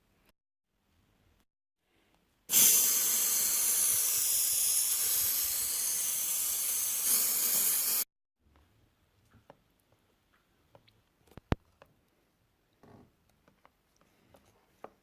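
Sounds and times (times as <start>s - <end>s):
loud steady hiss: 2.5s - 8.0s.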